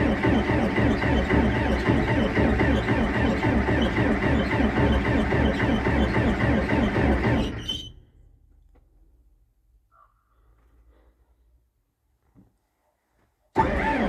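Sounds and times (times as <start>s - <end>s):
diesel engine starter cranking: 0.0s - 7.9s, 13.6s - 14.0s.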